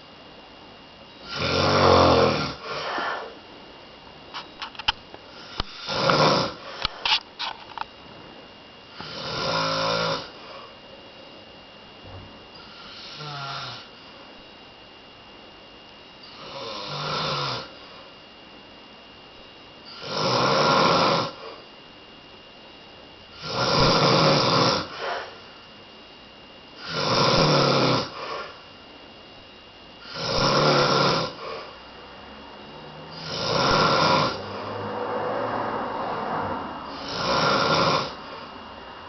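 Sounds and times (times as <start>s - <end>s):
man snoring loudly: 1.2s - 3.3s, 5.3s - 6.9s, 8.9s - 10.7s, 12.6s - 13.9s, 16.2s - 17.8s, 19.9s - 21.6s, 23.3s - 25.4s, 26.8s - 28.6s, 30.0s - 31.7s, 32.7s - 38.5s
soft breath: 2.6s - 3.4s, 24.9s - 25.4s.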